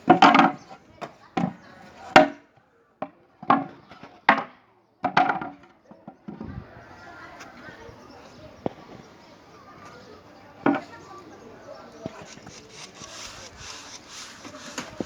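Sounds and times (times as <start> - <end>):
tool striking wood: 12.1 - 15.0.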